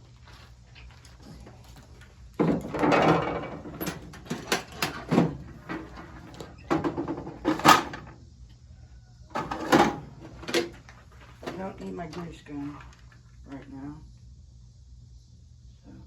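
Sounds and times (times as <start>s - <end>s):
sharp knocks and clanks: 2.4s - 8.1s.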